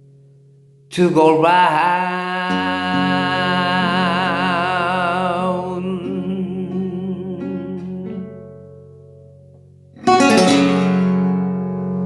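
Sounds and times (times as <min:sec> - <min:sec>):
acoustic guitar chord ringing: 0:00.0 - 0:12.0
held sung notes with vibrato: 0:00.9 - 0:08.6.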